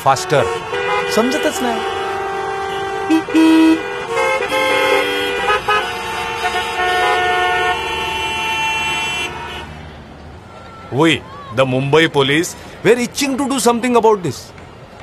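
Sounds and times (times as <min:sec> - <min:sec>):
vehicle horns honking: 0:00.0 - 0:09.9
traffic noise: 0:00.0 - 0:15.0.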